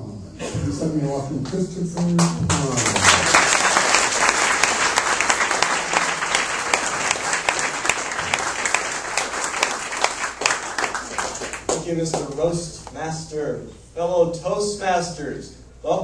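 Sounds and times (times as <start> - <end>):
audience applauding: 2.1 - 12.4.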